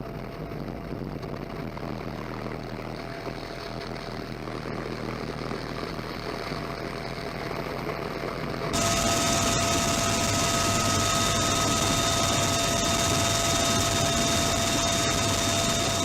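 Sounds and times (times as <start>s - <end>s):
aircraft engine drone: 8.7s - 16.0s.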